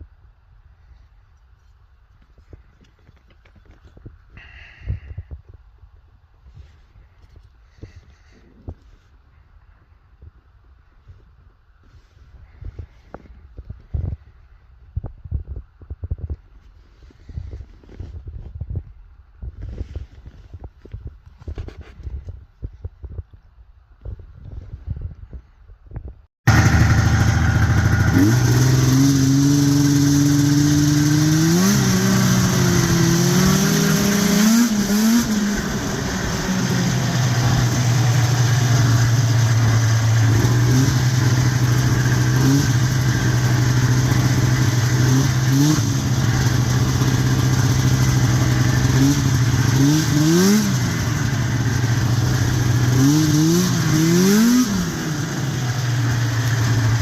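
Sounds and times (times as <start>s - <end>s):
engine throttle blips: 26.5s - 57.0s
snowmobile engine idling: 26.5s - 57.0s.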